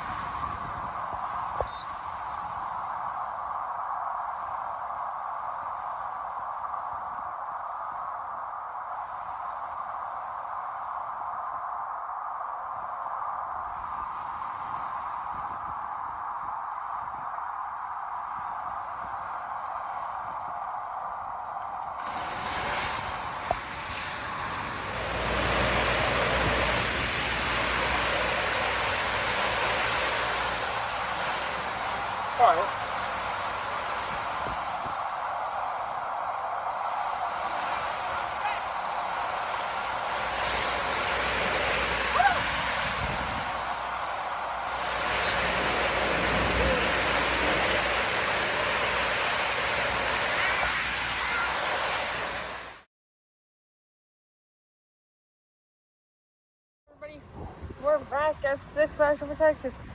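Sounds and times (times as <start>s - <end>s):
splashing falling water: 21.4s - 52.8s.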